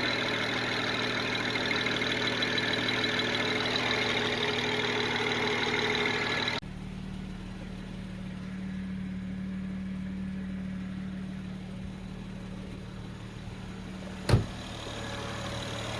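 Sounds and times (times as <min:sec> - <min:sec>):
car engine idling: 0:00.0 - 0:15.9
sharp thump: 0:14.3 - 0:14.6.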